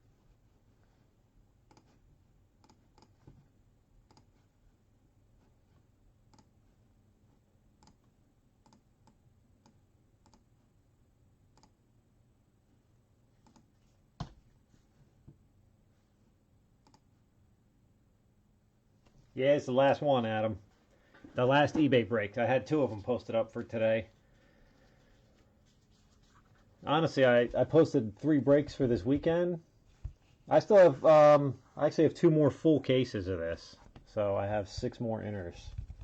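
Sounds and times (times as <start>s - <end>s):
faint irregular clicks: 1.7s - 2.0s, 2.6s - 3.4s, 4.0s - 4.4s, 6.3s - 6.6s, 7.8s - 10.5s, 11.5s - 11.8s, 13.4s - 13.7s, 16.8s - 17.1s.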